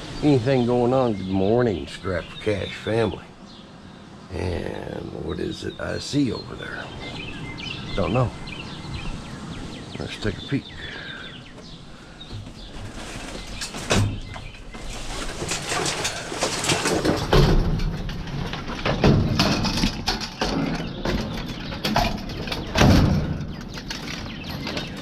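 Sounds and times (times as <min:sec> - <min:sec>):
items knocking and scraping: 0:12.3 - 0:25.0.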